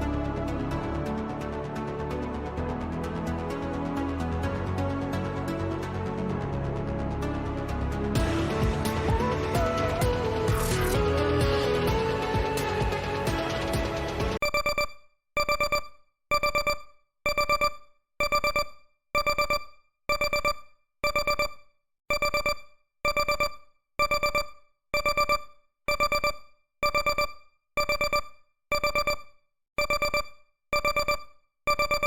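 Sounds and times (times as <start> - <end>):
timer alarm high beeps: 14.4 - 32.0.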